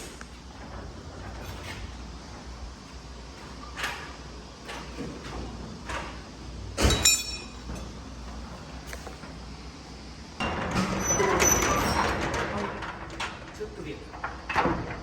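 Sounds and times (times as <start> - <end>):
loud ringing metal clank: 6.8 - 7.7.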